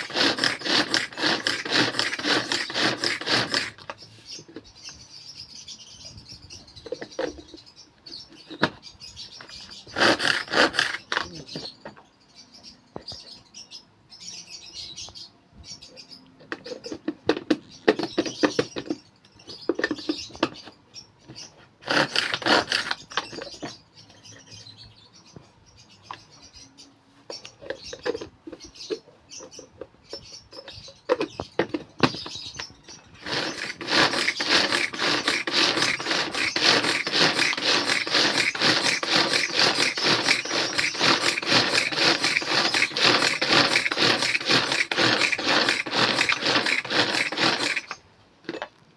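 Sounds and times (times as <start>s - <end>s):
food chopper clattering: 0.0s - 3.9s, 9.9s - 11.2s, 21.8s - 23.4s, 33.2s - 48.6s
lovebirds chirping: 0.0s - 48.1s.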